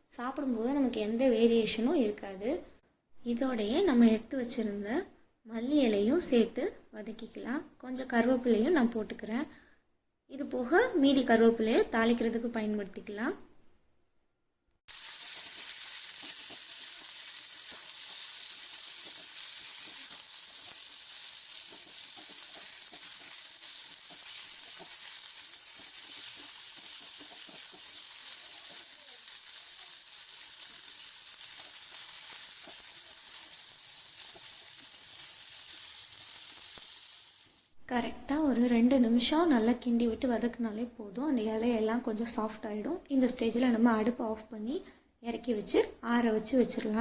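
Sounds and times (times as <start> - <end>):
vegetables sizzling in hot oil: 14.9 - 37.8.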